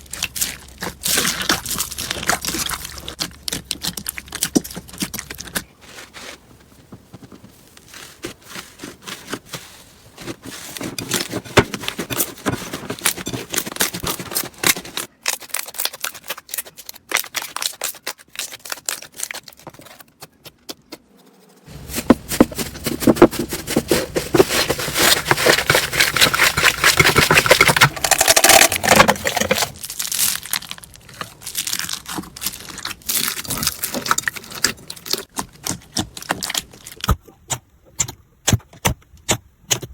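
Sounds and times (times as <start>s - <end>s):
crunchy slime crackling and popping: 0.0s - 5.7s, 12.9s - 20.4s, 24.6s - 37.4s.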